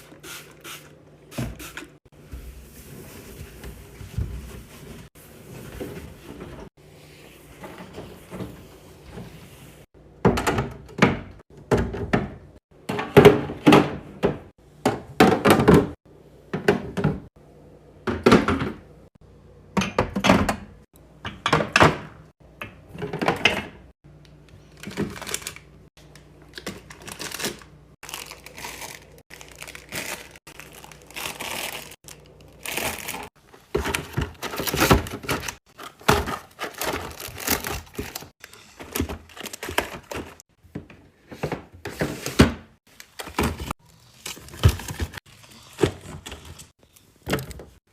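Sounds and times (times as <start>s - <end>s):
plastic packaging crinkling: 26.5s - 33.3s, 34.4s - 40.4s.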